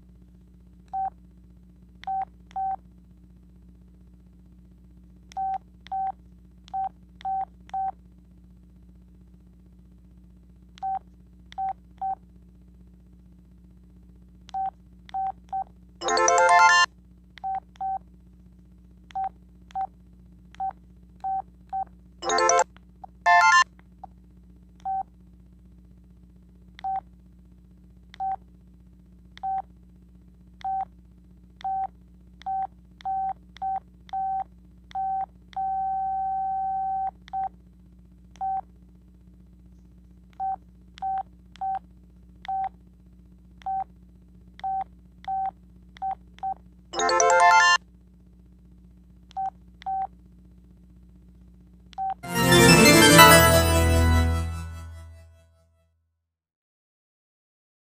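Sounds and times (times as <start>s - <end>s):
fuller-toned phone sounds: 16.0s - 16.9s, 22.2s - 22.7s, 23.3s - 23.6s, 47.0s - 47.8s, 52.2s - 55.3s
phone keypad beeps: 16.0s - 16.9s, 23.3s - 23.6s, 47.0s - 47.8s.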